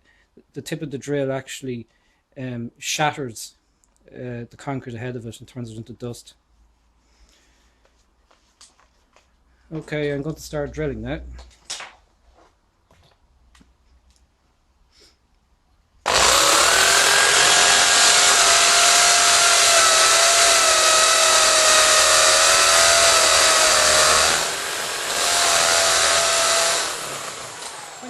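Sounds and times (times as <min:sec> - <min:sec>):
electric drill boring into wall: 0:16.0 - 0:28.0.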